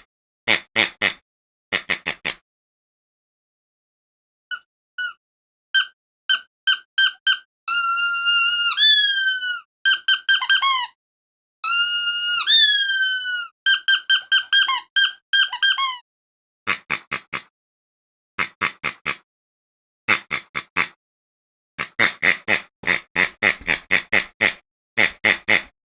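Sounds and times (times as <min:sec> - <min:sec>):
squeaky dog toy squeaking: 0:04.5 - 0:05.2, 0:05.8 - 0:11.0, 0:11.6 - 0:16.0.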